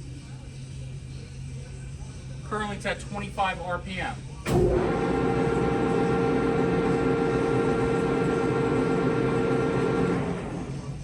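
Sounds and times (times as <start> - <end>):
machine hum and whine: 0.0 - 11.0
grinder drive switching on: 4.5 - 10.8.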